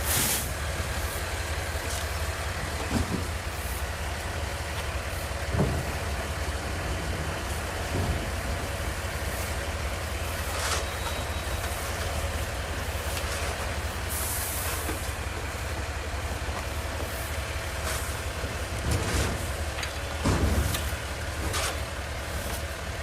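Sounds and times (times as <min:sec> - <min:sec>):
brief hiss: 0:00.0 - 0:00.6
street noise rumble: 0:00.0 - 0:23.0.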